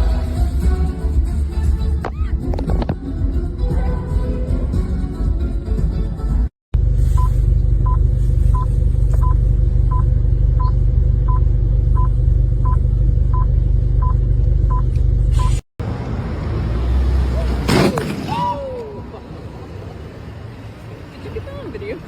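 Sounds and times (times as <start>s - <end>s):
low engine-like rumble: 6.3s - 16.0s.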